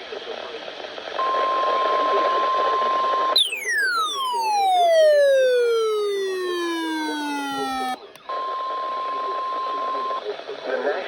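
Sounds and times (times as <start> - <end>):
electronic tone sweeping down: 3.4 - 8.0
steady alarm tone: 3.4 - 8.0.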